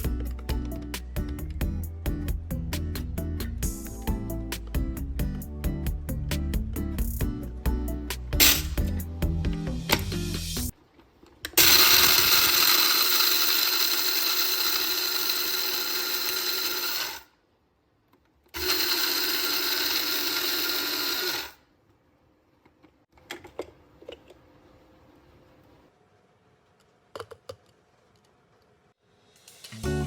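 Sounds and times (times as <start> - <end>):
electric coffee grinder grinding beans: 11.6 - 17.3, 18.6 - 21.6.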